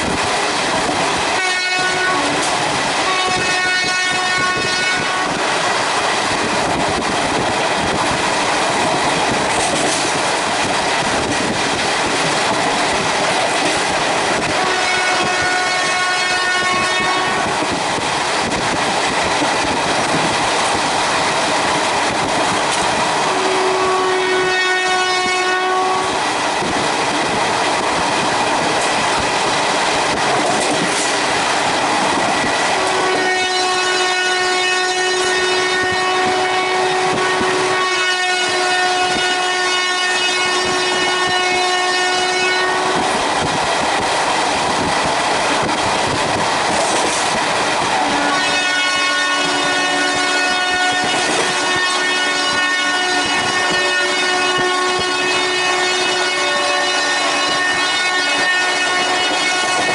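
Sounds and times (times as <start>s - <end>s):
train running at speed: 0.0s - 59.9s
locomotive horn blasts: 1.3s - 5.5s, 14.4s - 17.6s, 23.2s - 26.2s, 32.8s - 43.2s, 48.0s - 59.9s.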